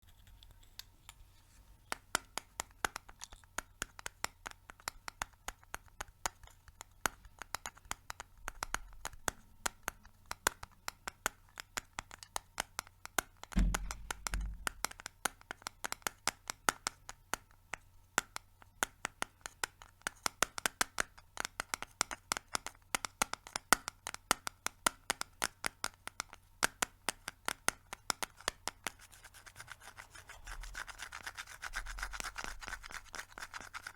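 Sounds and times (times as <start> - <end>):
dull low bump: 13.6 - 14.9
fingernails tapping on hard surface: 13.6 - 15.0.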